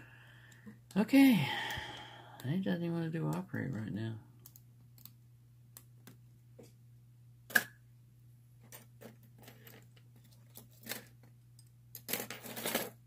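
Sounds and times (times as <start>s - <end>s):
low electrical hum: 0.0s - 13.0s
lock picks clicking and scraping: 8.6s - 13.0s.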